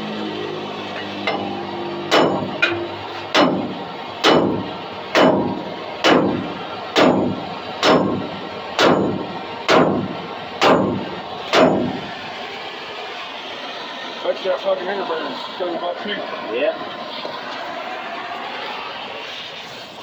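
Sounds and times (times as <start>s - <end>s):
heavy hammer blows on steel: 1.2s - 12.2s.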